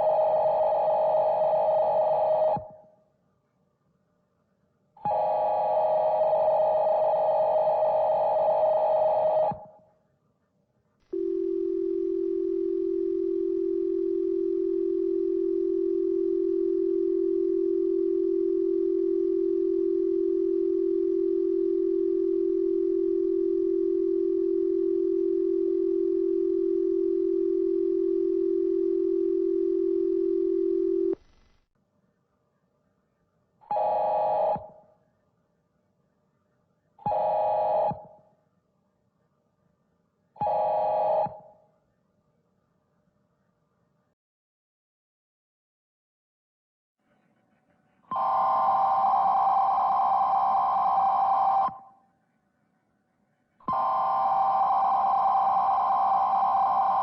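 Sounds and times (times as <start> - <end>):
long steady low tone: 11.1 - 31.2, 47.2 - 57.0.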